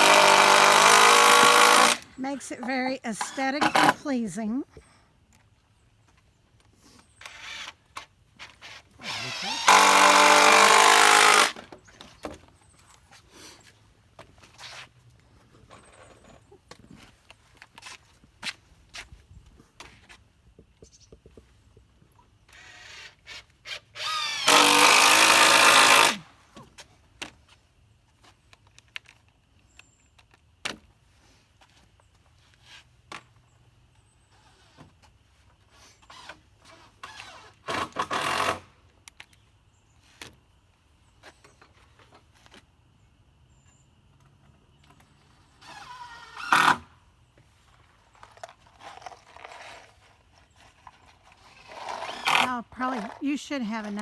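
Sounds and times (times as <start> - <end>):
power drill driving screws: 0.0 - 2.1, 3.2 - 4.0, 7.2 - 7.8, 8.7 - 11.7, 22.5 - 26.2, 36.0 - 38.7, 45.6 - 46.9, 51.4 - 53.2.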